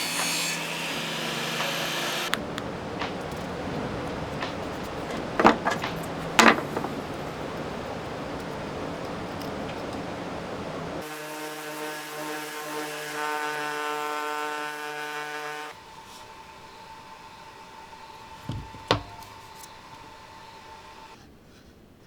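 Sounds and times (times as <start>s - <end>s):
faint steady hum: 0.0s - 11.0s
short knocks: 0.1s - 7.8s, 18.4s - 19.6s.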